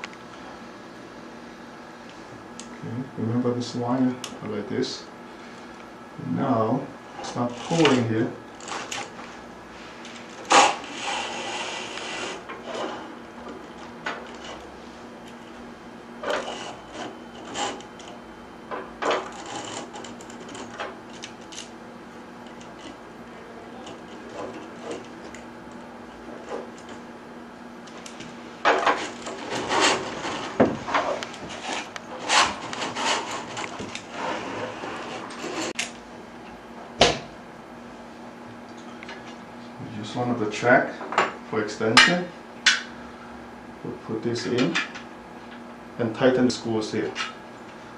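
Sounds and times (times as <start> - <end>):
faint steady hum: 0.0 - 47.9
curtain track parts clicking and scraping: 7.2 - 9.1, 10.0 - 13.1, 14.0 - 14.7, 16.2 - 18.2, 19.0 - 21.7, 28.0 - 35.9.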